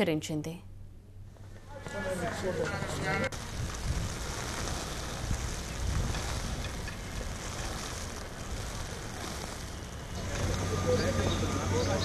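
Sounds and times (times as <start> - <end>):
low unsteady rumble: 3.2 - 11.6
faint hiss: 3.2 - 12.0.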